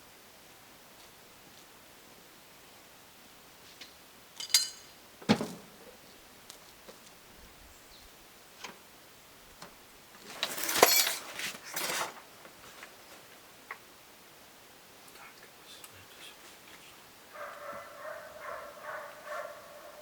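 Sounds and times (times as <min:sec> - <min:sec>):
hard objects clinking and knocking: 0:04.4 - 0:04.9
short metallic ring: 0:04.4 - 0:04.9.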